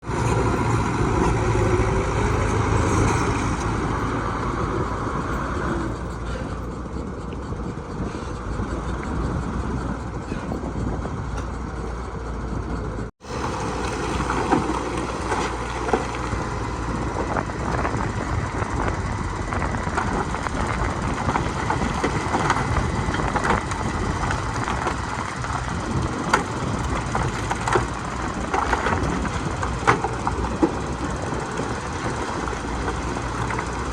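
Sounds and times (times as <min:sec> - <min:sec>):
diesel machinery running: 0:00.0 - 0:33.9.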